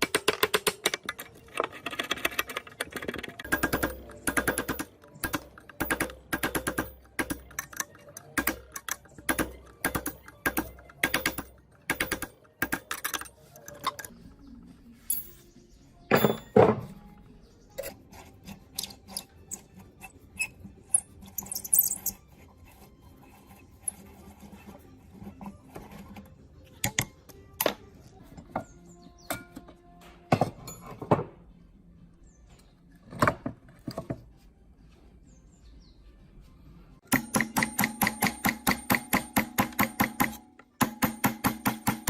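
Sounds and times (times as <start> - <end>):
metal tools clinking and knocking: 12.4 - 14.2, 15.1 - 17.2, 20.4 - 22.3, 29.3 - 31.3.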